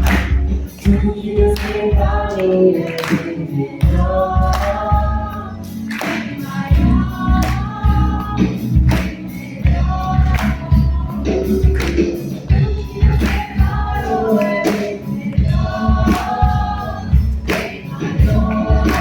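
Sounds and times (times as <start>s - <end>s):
deep pulsing bass beat: 0.0s - 2.4s
group singing: 0.0s - 19.0s
guitar accompaniment: 0.0s - 19.0s.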